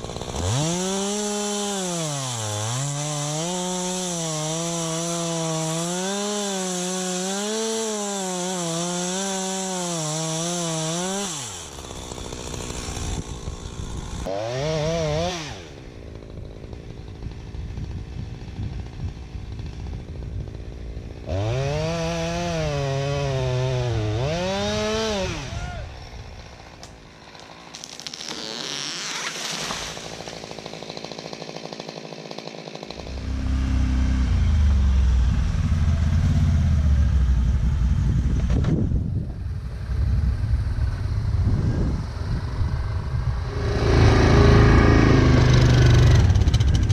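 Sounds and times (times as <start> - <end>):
chainsaw cutting: 0.0 - 36.1, 41.7 - 46.9
deeper engine running: 33.0 - 46.9.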